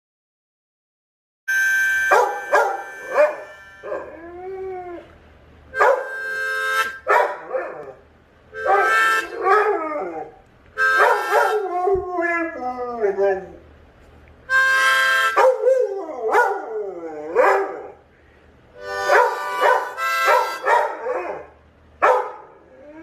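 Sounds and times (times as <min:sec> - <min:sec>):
dog howling: 0:02.1 - 0:05.1, 0:08.6 - 0:10.4, 0:11.0 - 0:13.6, 0:15.4 - 0:18.0.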